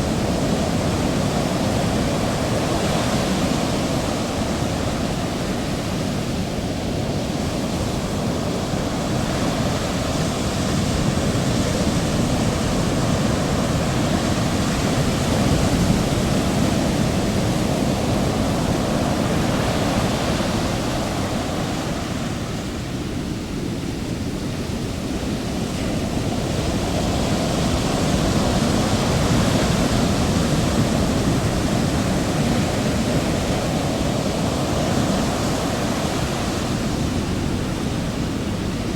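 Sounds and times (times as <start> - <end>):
ocean waves surf rushing: 0.0 - 38.9.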